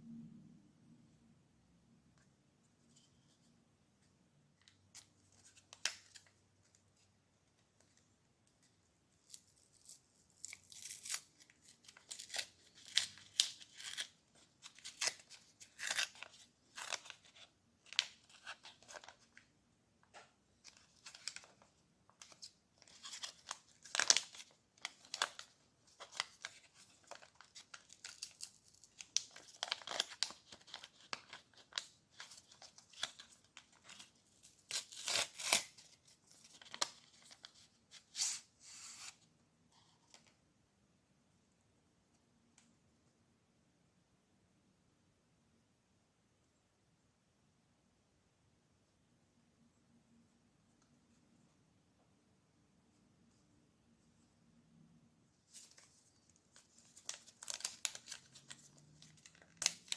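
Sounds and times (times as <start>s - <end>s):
packaging crinkling and tearing: 9.2s - 19.4s, 20.6s - 39.1s, 55.5s - 59.9s.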